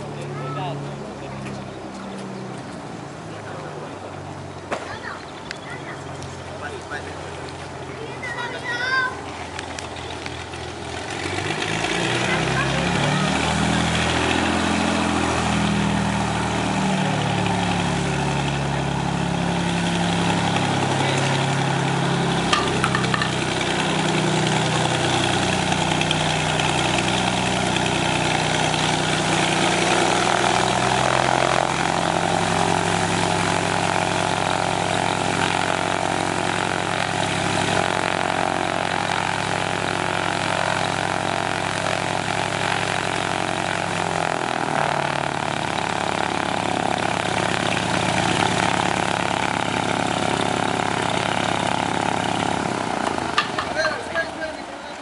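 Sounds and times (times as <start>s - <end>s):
light plane propeller engine: 0.0s - 55.0s.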